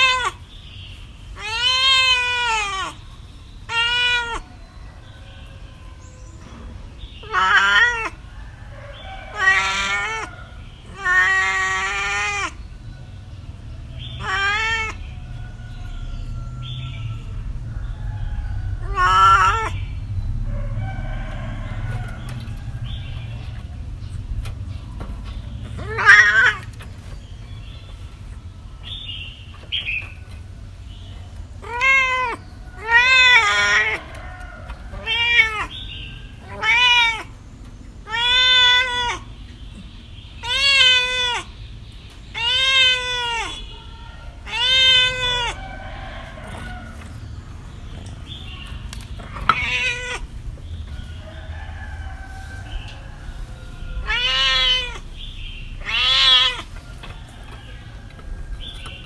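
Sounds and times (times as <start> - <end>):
cat meowing: 0.0 - 0.4, 1.4 - 3.0, 3.6 - 4.5, 7.2 - 8.2, 9.2 - 12.6, 14.2 - 15.2, 18.8 - 19.8, 25.7 - 26.8, 31.6 - 37.4, 38.0 - 39.4, 40.4 - 41.6, 42.3 - 45.8, 49.2 - 50.5, 54.0 - 56.8.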